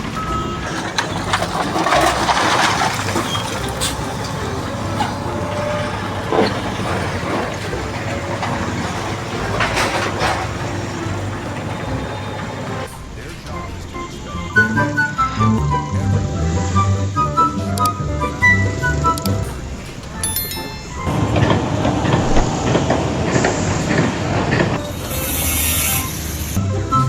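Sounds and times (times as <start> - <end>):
heavy engine running: 0.0 - 13.0.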